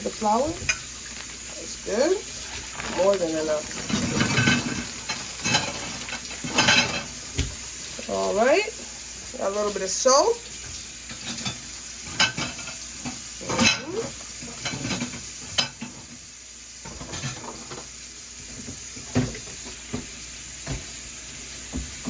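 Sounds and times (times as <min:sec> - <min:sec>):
containers and utensils clinking: 0:00.0 - 0:08.2, 0:10.7 - 0:16.2, 0:16.8 - 0:17.9
faint steady hiss: 0:00.0 - 0:22.0.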